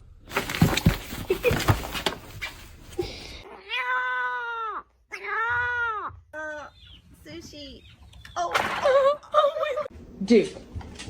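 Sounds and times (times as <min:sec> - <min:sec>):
rustling and knocking: 0:00.3 - 0:03.0.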